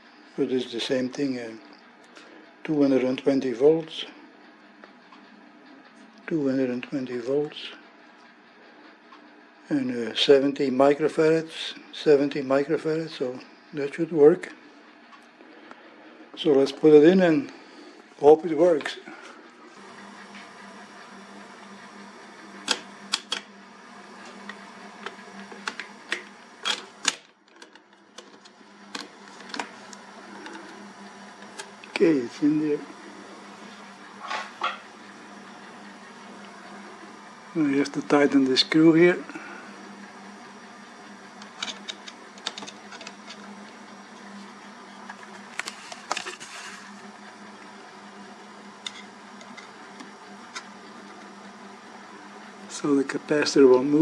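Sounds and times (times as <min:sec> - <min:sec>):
steady low hum: 0:00.0 - 0:54.0
clicks and knocks of handling: 0:25.0 - 0:29.8, 0:41.4 - 0:43.4.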